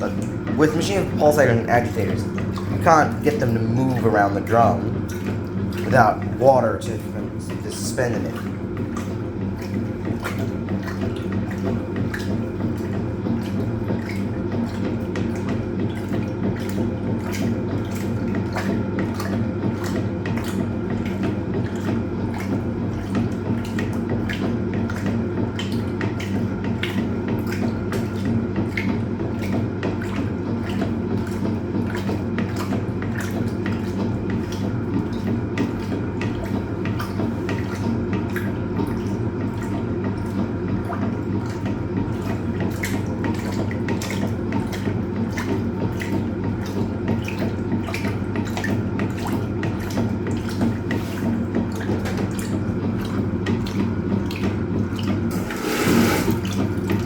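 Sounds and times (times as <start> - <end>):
washing machine motor hum: 0.0 - 57.0
water sloshing in tub: 0.0 - 57.0
loud water splash: 55.3 - 56.6.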